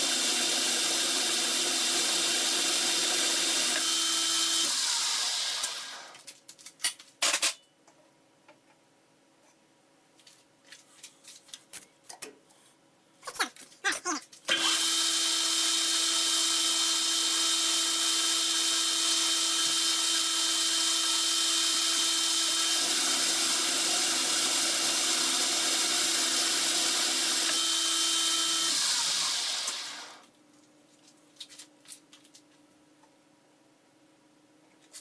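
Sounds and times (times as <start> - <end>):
power tool whining: 0.0 - 6.2, 14.5 - 30.3.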